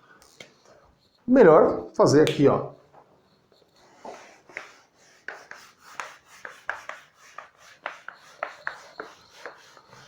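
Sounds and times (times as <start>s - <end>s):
high squeak of writing: 0.6s - 1.3s, 3.2s - 10.0s
writing scratching on a board: 1.0s - 1.2s, 3.2s - 10.0s.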